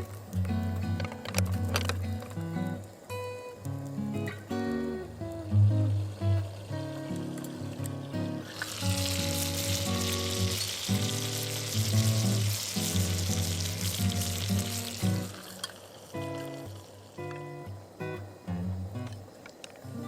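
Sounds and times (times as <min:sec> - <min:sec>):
batter sizzling: 0:00.0 - 0:19.1
acoustic guitar music: 0:00.0 - 0:20.0.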